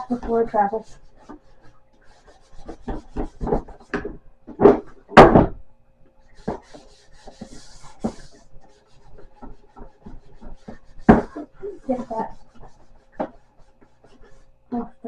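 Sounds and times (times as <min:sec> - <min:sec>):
sponge scrubbing slow cooker: 0:00.0 - 0:03.9, 0:06.3 - 0:14.4.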